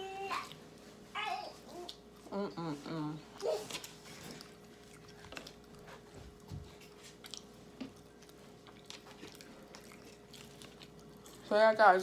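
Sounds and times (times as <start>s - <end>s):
chewing: 3.4s - 11.5s.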